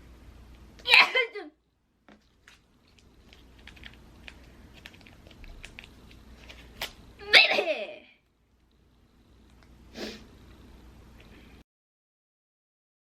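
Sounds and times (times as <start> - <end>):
woman sneezing: 0.9 - 1.4, 7.2 - 8.1.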